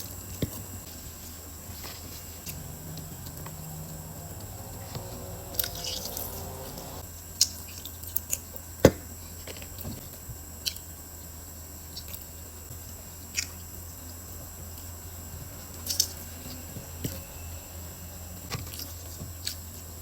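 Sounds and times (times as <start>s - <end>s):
steady low hum: 0.0s - 7.4s.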